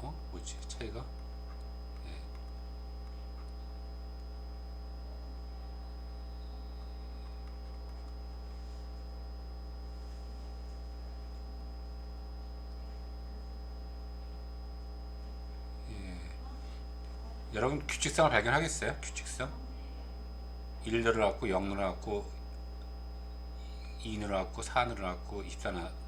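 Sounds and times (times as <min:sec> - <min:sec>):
electrical mains hum: 0:00.0 - 0:26.0
faint high whine: 0:00.0 - 0:26.0.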